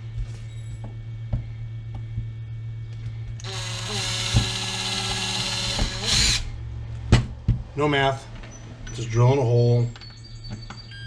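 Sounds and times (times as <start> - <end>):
cordless drill whining: 3.4 - 6.5.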